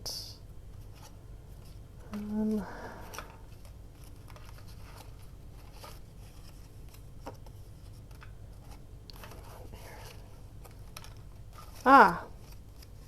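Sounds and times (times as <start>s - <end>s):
low steady hum: 0.0s - 13.0s
paper rustling and tapping: 3.0s - 13.0s.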